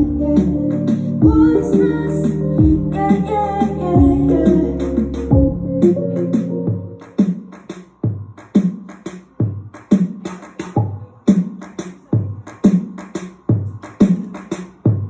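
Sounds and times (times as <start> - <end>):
drum beat with booming kicks: 0.0 - 0.6, 1.2 - 5.7, 6.7 - 15.0.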